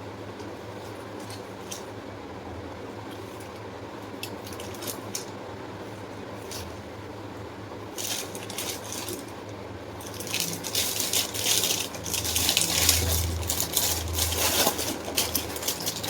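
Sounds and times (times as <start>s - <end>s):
packaging crinkling and rustling: 4.2s - 5.4s, 8.0s - 16.0s.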